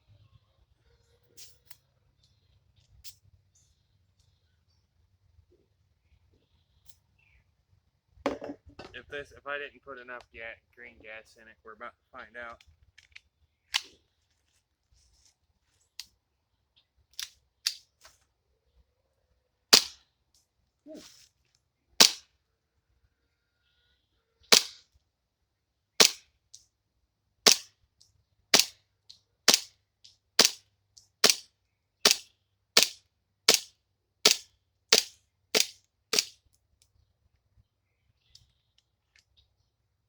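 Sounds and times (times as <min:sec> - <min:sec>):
airsoft pistol shots: 0:19.7 - 0:20.0, 0:22.0 - 0:22.2, 0:24.5 - 0:24.8, 0:26.0 - 0:26.2, 0:27.5 - 0:27.7, 0:28.6 - 0:28.8, 0:29.5 - 0:29.7, 0:30.4 - 0:30.6, 0:31.2 - 0:31.4, 0:32.8 - 0:33.7, 0:34.3 - 0:36.3.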